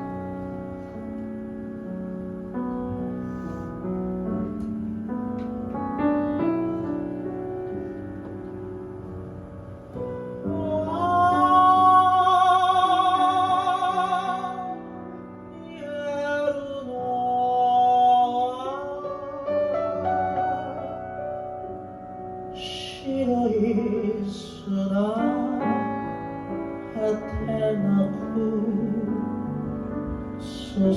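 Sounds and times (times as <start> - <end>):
piano accompaniment: 0.0 - 30.9
person singing a ballad: 10.0 - 21.6, 22.5 - 30.9.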